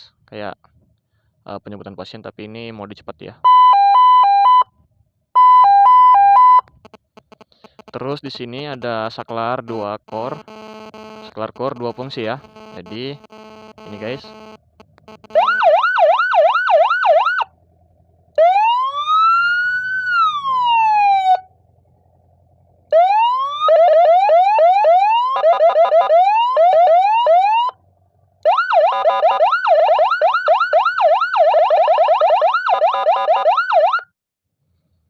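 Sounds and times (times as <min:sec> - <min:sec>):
electronic siren cycling tones: 0:03.5 - 0:04.7, 0:05.4 - 0:08.0, 0:09.7 - 0:17.5, 0:18.4 - 0:21.5, 0:22.9 - 0:27.8, 0:28.4 - 0:34.1.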